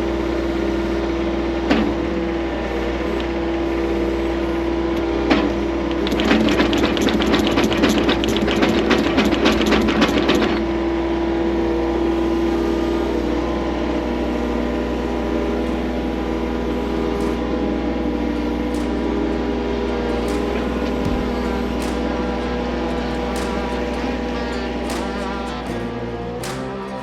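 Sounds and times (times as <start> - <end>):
skid loader engine running: 0.7 - 27.0
rapid even rattle: 15.6 - 27.0.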